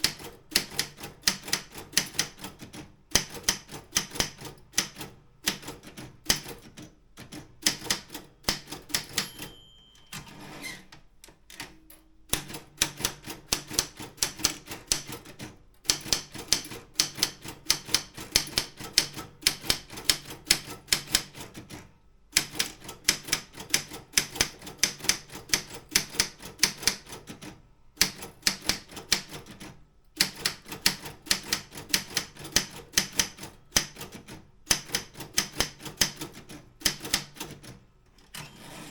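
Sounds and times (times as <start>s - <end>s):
typewriter key clicks: 3.1s - 6.6s, 7.2s - 9.6s.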